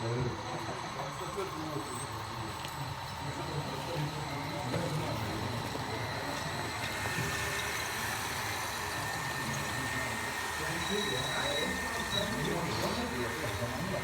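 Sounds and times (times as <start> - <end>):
toy loader motor running: 3.7 - 14.0
thin high whine: 8.9 - 14.0.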